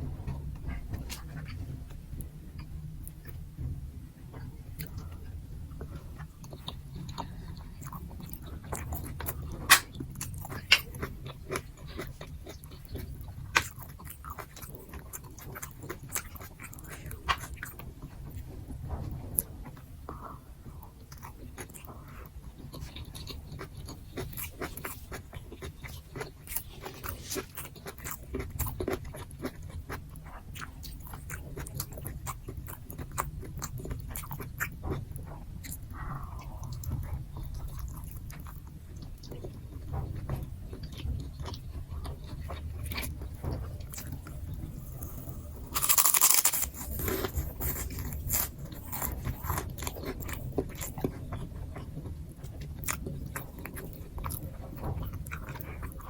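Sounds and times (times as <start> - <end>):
low steady hum: 0.0 - 56.0
chewing with wet mouth clicks: 5.8 - 18.4, 21.0 - 56.0
food crunching: 21.1 - 35.0, 35.6 - 56.0.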